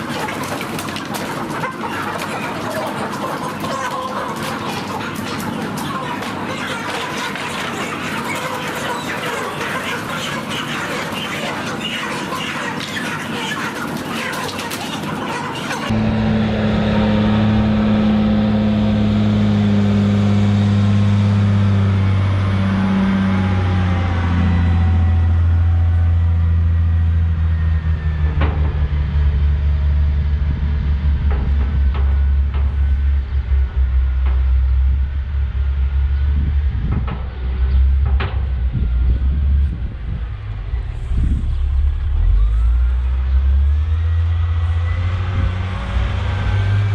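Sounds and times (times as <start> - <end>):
tractor engine humming: 15.9 - 46.9
sharp knocks and rattles: 30.7 - 39.8.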